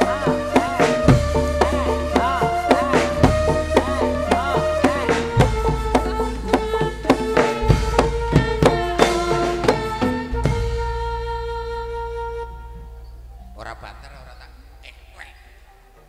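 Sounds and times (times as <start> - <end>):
gamelan percussion: 0.0 - 11.6
hand drums: 0.0 - 13.7
deep bass: 0.0 - 16.0.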